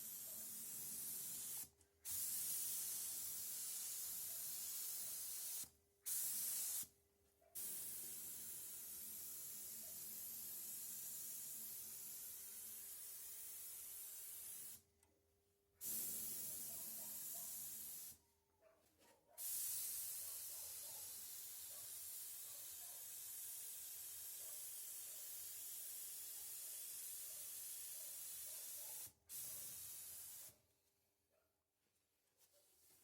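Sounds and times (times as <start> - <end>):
spray gun hissing: 0.6 - 6.8, 19.5 - 20.5, 25.7 - 30.5.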